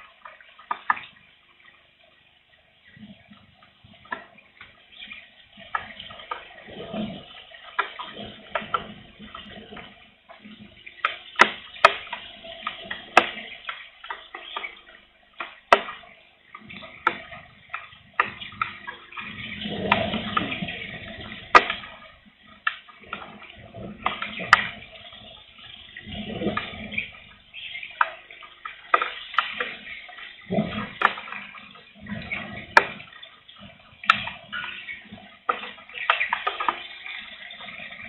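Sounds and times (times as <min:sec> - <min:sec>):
raindrops ticking: 0:00.0 - 0:38.0.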